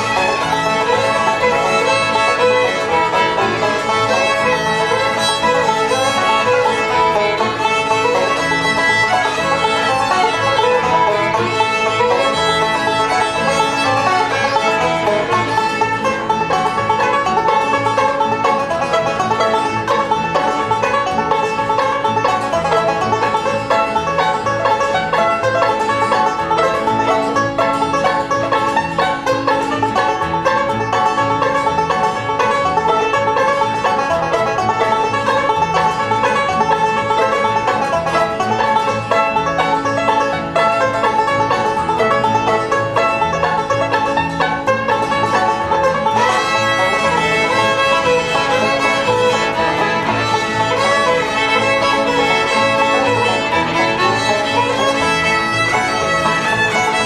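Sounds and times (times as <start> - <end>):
fiddle: 0.0 - 57.0
picked banjo: 0.0 - 57.0
strummed guitar: 0.0 - 57.0
walking bass: 0.0 - 57.0.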